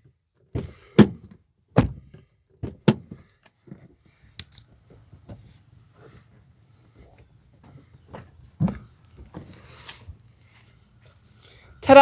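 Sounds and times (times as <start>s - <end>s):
car door latch clicking: 2.8s - 3.1s.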